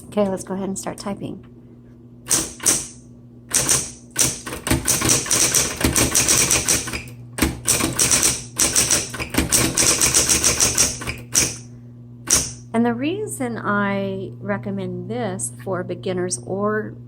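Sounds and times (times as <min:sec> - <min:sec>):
typewriter motor hum: 0:02.2 - 0:12.6
typewriter keystrokes: 0:02.3 - 0:11.6, 0:12.3 - 0:12.6.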